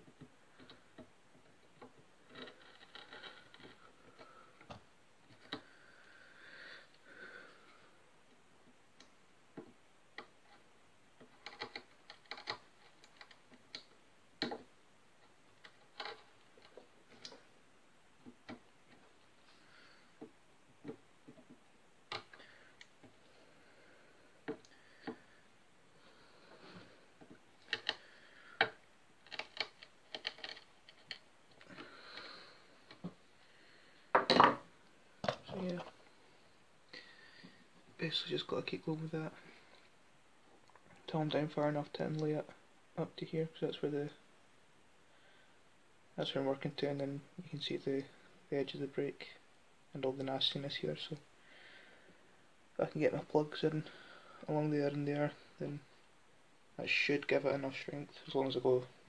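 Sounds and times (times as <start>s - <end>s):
chisel scraping wood: 2.2s - 4.4s.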